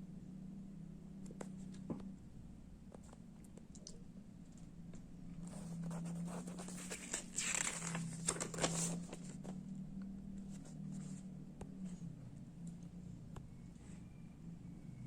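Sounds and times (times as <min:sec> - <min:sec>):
low steady hum: 0:00.0 - 0:15.0
rustling and crinkling handling noise: 0:05.4 - 0:09.6.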